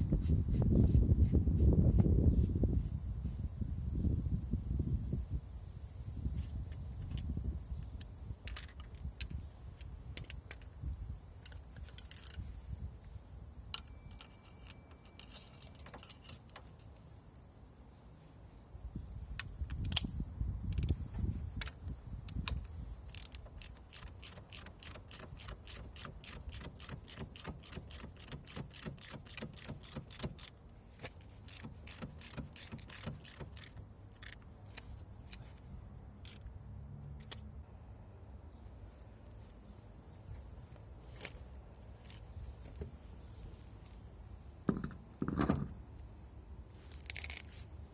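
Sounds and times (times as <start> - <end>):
metal tools clinking: 13.8 - 17.1.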